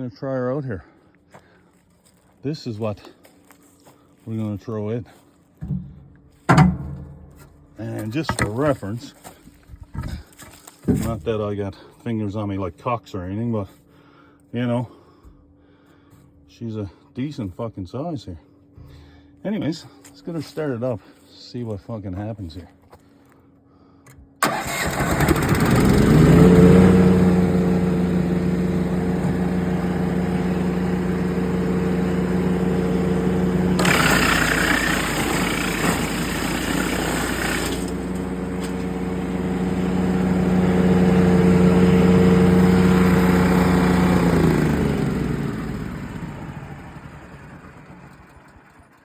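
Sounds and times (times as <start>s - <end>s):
wood chipper engine running: 24.4s - 49.0s
branch grinding in chipper: 24.8s - 46.5s.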